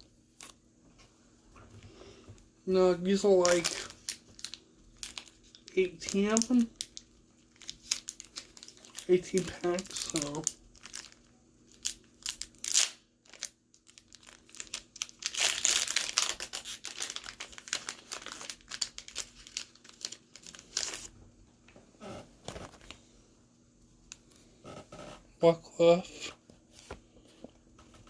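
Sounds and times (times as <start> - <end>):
foil wrapper crinkling: 2.9 - 21.2.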